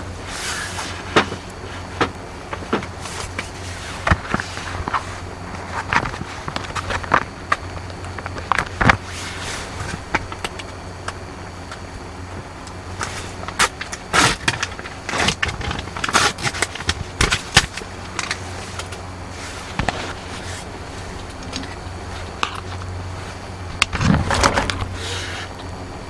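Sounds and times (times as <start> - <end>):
steady low hum: 0.0 - 26.0
objects clicking and rustling: 23.7 - 25.3.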